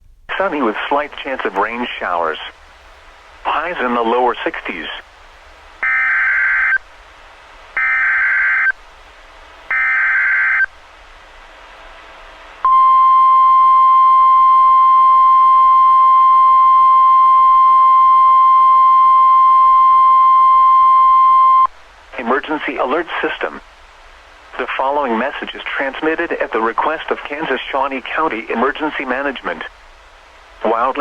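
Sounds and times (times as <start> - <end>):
high warning alarm tone: 5.8 - 6.8, 7.8 - 8.8, 9.7 - 10.7, 12.6 - 21.7.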